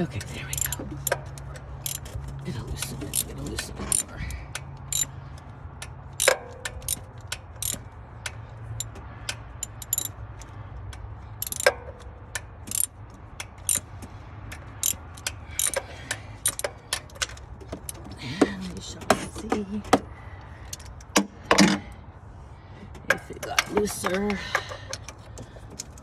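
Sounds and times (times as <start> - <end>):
socket ratchet clicking: 0.5 - 5.1, 5.8 - 10.5, 11.4 - 18.1.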